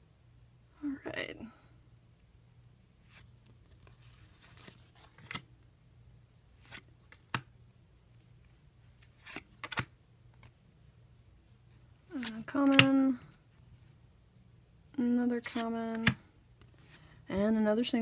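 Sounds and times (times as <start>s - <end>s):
card pack snaps and clicks: 9.2s - 10.5s.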